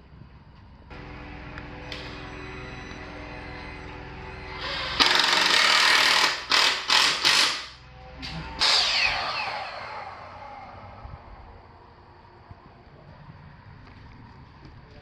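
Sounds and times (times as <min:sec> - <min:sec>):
power tool motor running: 0:04.2 - 0:07.7.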